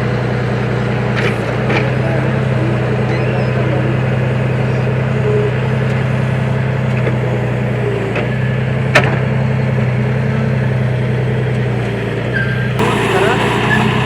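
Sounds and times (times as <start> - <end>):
tractor engine running: 11.0 - 14.0.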